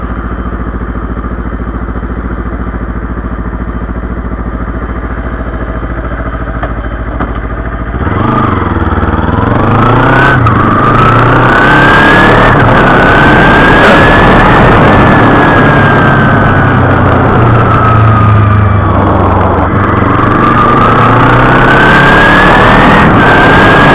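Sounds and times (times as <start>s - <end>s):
motorcycle engine idling and revving: 0.0s - 23.9s
rushing wind noise: 10.2s - 23.9s.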